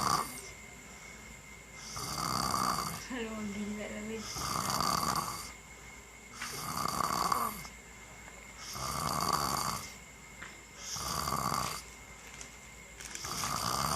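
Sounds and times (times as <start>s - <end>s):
person snoring: 0.0s - 0.6s, 1.8s - 3.1s, 4.2s - 5.6s, 6.3s - 7.7s, 8.6s - 10.0s, 10.8s - 11.9s, 13.2s - 13.9s.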